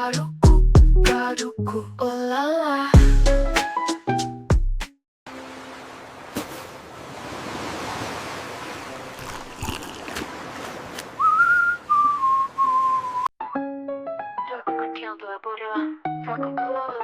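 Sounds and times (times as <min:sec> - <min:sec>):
ocean surf washing: 0:05.3 - 0:13.2
person whistling: 0:11.2 - 0:13.3.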